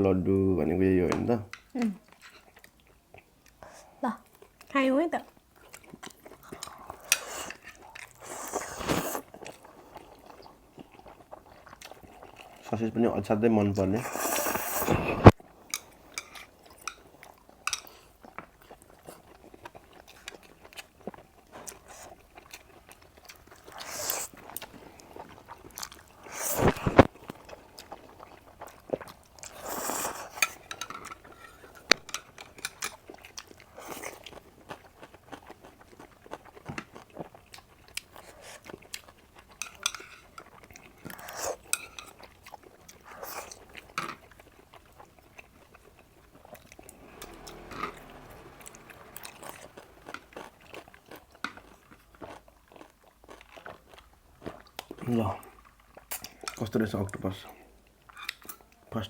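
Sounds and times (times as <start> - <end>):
person chewing food: 1.5 - 4.7, 5.3 - 12.7, 13.9 - 56.6
cutlery clicking on dishes: 39.6 - 40.5.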